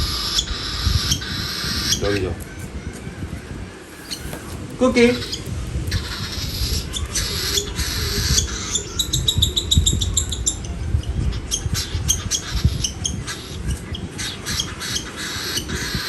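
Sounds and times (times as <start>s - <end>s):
baby bird begging chirps: 3.9s - 10.6s.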